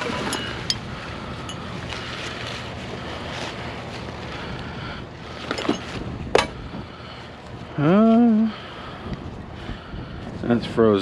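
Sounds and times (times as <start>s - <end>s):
wind noise on microphone: 4.0s - 11.0s.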